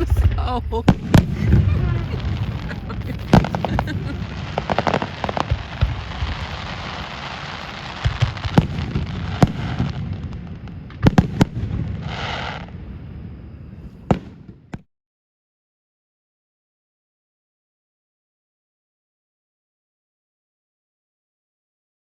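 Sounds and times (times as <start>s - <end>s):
fireworks crackling: 0.0s - 12.9s
fireworks bangs: 0.0s - 13.1s, 13.7s - 14.8s.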